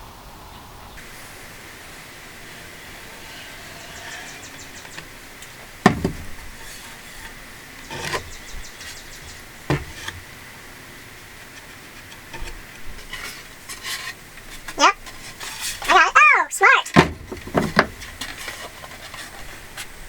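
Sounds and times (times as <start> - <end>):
faint hiss: 0.0 - 20.0
thin high whine: 1.0 - 9.1
sharp knocks: 5.8 - 6.8.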